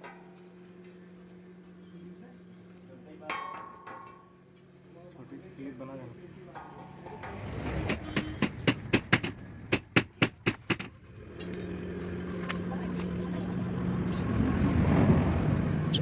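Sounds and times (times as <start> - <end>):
workshop motor humming: 0.0 - 16.0
hammer striking iron: 3.3 - 4.4, 6.5 - 11.0.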